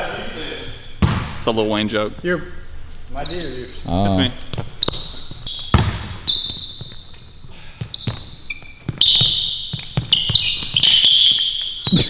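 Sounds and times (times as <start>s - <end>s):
sneakers squeaking: 0.0s - 12.0s
basketball bouncing on a court: 1.0s - 1.5s, 4.5s - 12.0s.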